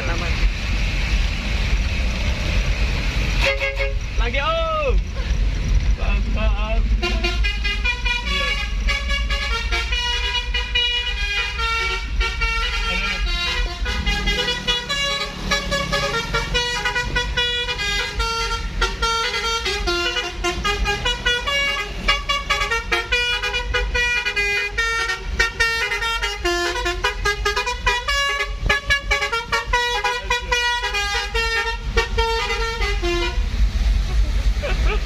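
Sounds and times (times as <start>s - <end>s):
multi-tone bus horn melody: 3.3s - 4.2s, 7.0s - 34.1s.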